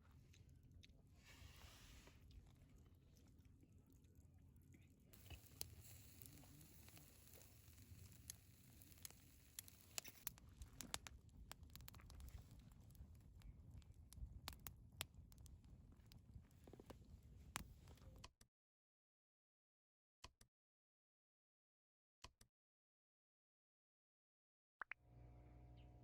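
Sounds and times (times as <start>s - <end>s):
faint irregular clicks: 2.2s - 18.4s.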